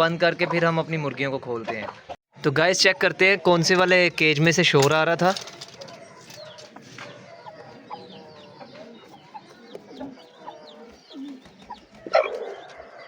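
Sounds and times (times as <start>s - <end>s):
chickens clucking: 0.0s - 13.0s
chicks peeping: 5.1s - 13.0s.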